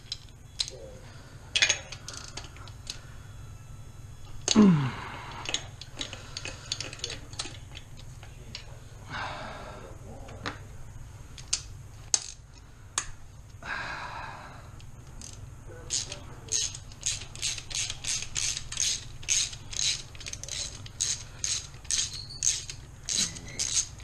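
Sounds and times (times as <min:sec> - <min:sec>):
rasping ratcheting: 0:01.6 - 0:03.0, 0:15.2 - 0:24.0
ratchet wrench clicking: 0:01.6 - 0:03.0, 0:15.2 - 0:24.0.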